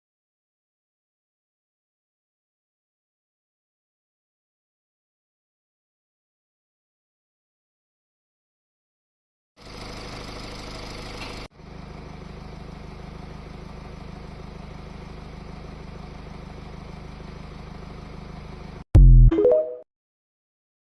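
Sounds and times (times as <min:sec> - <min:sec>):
diesel engine idling: 0:09.6 - 0:18.8
loud sound with stepping pitch: 0:19.0 - 0:19.8.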